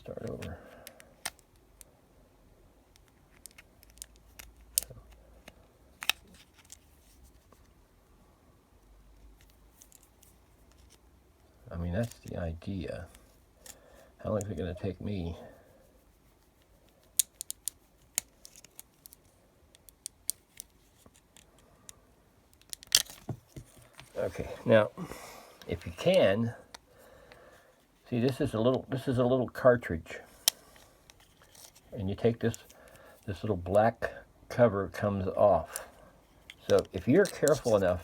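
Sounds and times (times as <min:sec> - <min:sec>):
sharp plastic clicks: 0:17.0 - 0:21.6
screwdriver scraping plastic case: 0:36.5 - 0:38.0.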